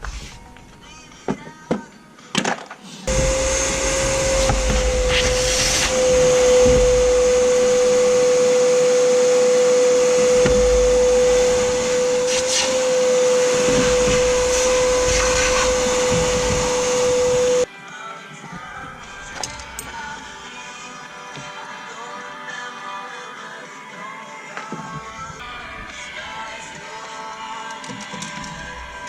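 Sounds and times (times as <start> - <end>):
vacuum cleaner whining: 3.1 - 17.7.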